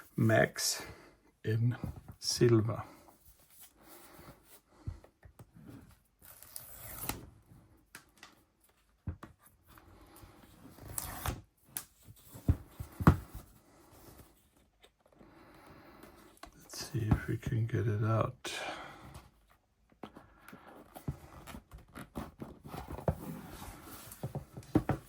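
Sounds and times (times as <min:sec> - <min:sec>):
cardboard rustling: 0:19.3 - 0:25.0.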